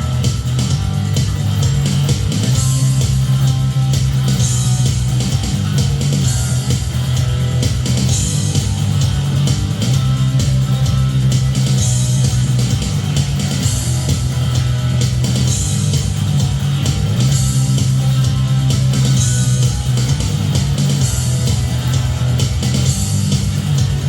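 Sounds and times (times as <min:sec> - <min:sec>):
bass and drums backing track: 0:00.0 - 0:24.0
electric guitar playing rock: 0:00.0 - 0:24.0.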